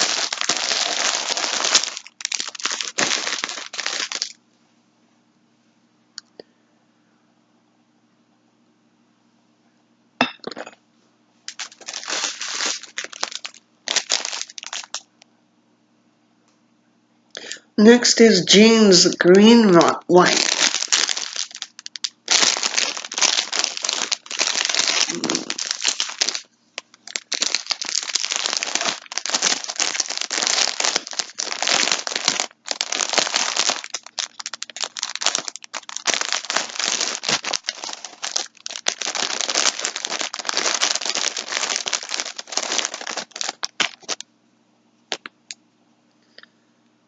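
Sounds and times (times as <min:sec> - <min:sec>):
plastic packaging crinkling: 0:00.0 - 0:04.4, 0:11.5 - 0:15.1, 0:18.5 - 0:44.2.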